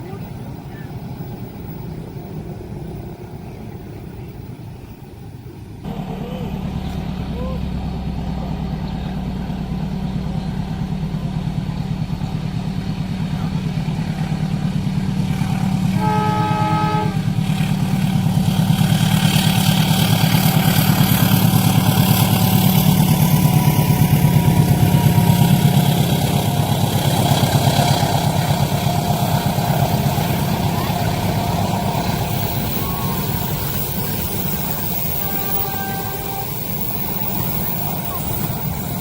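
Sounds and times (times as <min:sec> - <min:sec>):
diesel train engine rumble: 0:00.0 - 0:39.0
train wheels rattling on rails: 0:00.0 - 0:39.0
train horn blast: 0:15.2 - 0:19.0, 0:20.1 - 0:39.0.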